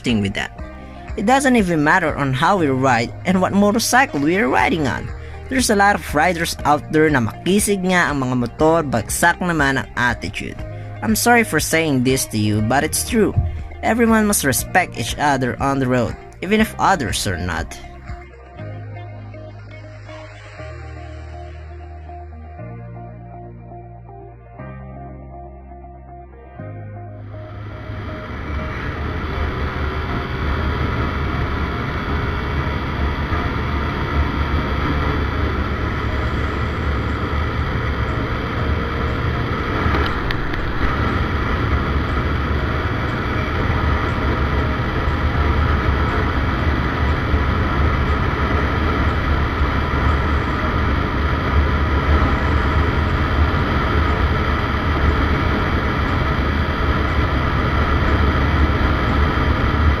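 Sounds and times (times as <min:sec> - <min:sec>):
motorcycle engine running: 0:27.4 - 1:00.0.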